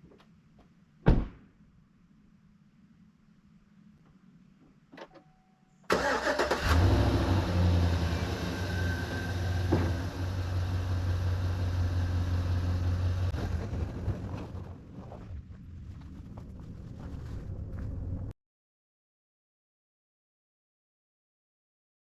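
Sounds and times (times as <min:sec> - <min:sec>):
brief tone: 0:05.0 - 0:05.9
van engine starting and idling: 0:05.9 - 0:14.6.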